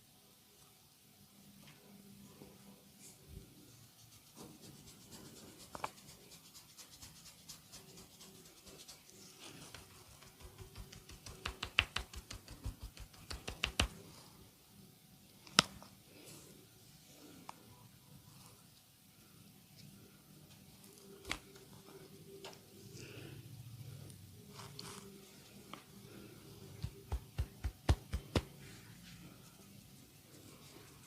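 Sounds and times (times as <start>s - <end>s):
rapid percussive slaps: 10.1s - 14.0s, 26.8s - 28.6s
light taps of hands: 10.2s - 14.0s, 26.8s - 28.6s.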